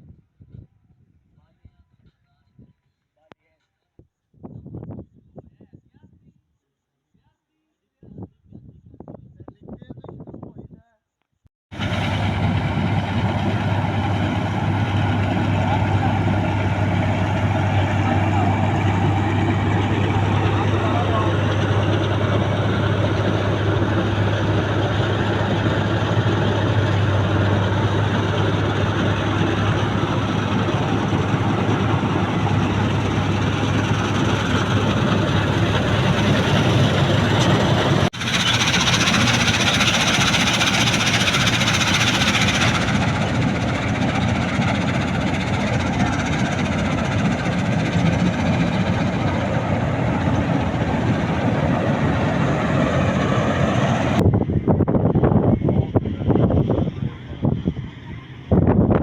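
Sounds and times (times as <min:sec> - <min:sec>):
combine harvester engine drone: 0:11.8 - 0:59.0
hiss: 0:38.2 - 0:43.1.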